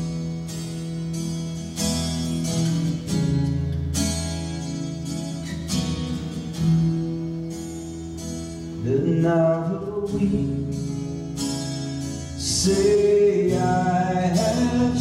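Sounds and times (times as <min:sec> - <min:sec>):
strummed acoustic guitar: 0:00.0 - 0:15.0.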